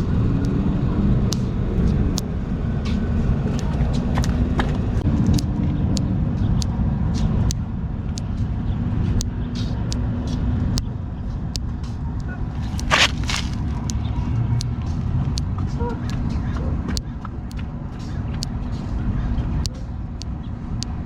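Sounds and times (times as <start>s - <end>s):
joints cracking and popping: 11.5s - 17.6s.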